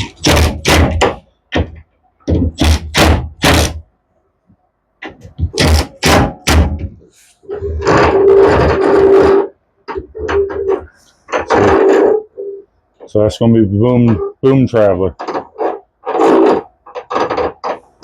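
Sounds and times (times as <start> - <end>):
rough continuous scraping: 7.0 - 12.3.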